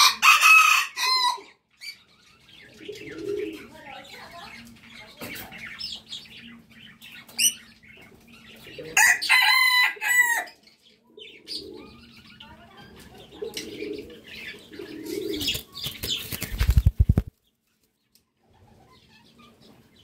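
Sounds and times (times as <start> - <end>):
rooster crowing: 0.0 - 1.5, 9.0 - 10.6
small birds chirping: 1.3 - 20.0.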